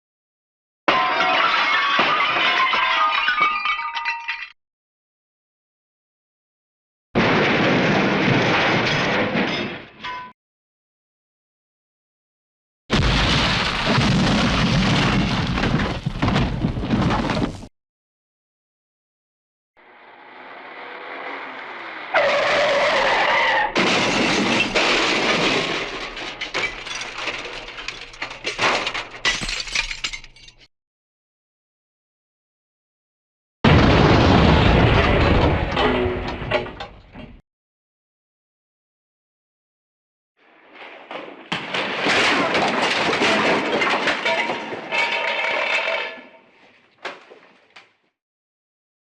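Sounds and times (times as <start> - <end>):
debris clattering: 0.9 - 4.6, 7.2 - 10.3, 12.9 - 17.7, 22.2 - 30.7, 33.7 - 37.4, 40.6 - 46.5
falling pieces: 0.9 - 4.6, 23.8 - 30.7, 40.6 - 46.5
glass shattering: 0.9 - 4.6, 23.8 - 30.7, 41.5 - 46.4
tyres screeching: 22.1 - 23.8.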